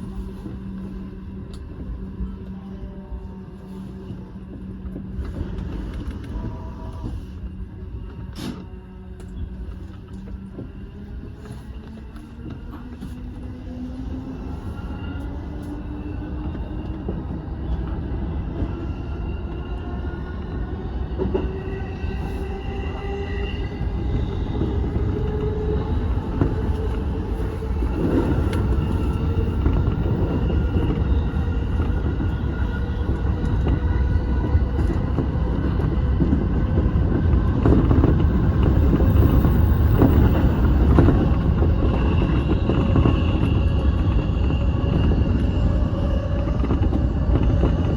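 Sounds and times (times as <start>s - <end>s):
train wheels rumbling on rails: 0.0s - 47.9s.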